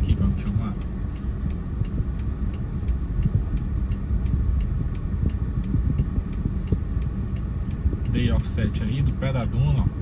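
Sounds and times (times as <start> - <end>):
car engine rumbling: 0.0 - 10.0.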